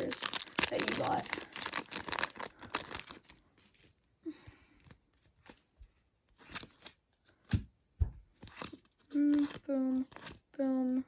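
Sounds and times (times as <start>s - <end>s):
wrapper rustling: 0.0s - 4.0s.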